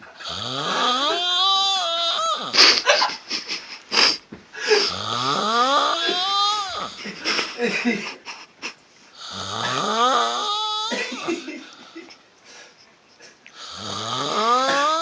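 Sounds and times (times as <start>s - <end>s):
snoring with moaning tone: 0.2s - 2.6s, 4.9s - 7.0s, 9.2s - 11.1s, 13.6s - 15.0s
sharp breathy bursts: 2.5s - 5.0s.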